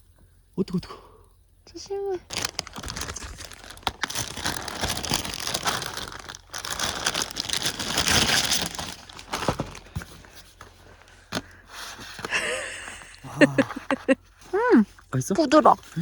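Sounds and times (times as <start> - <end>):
dried fish jerky tearing crackling: 2.2 - 9.3.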